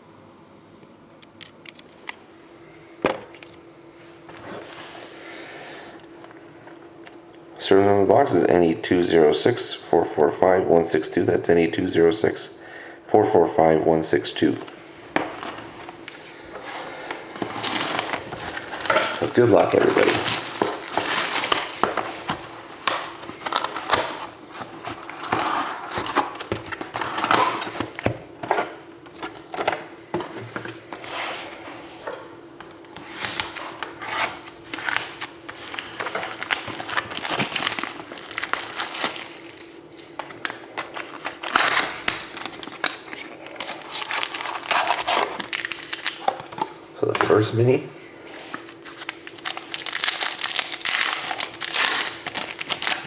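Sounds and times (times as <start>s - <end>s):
plastic wrapping crinkling and tearing: 17.4s - 28.0s, 34.6s - 46.6s, 48.6s - 53.0s.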